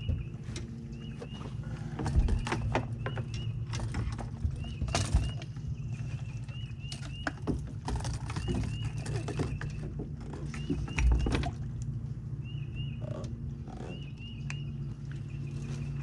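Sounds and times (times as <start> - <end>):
fishing gear knocking and clattering: 0.0 - 5.8, 6.4 - 11.7.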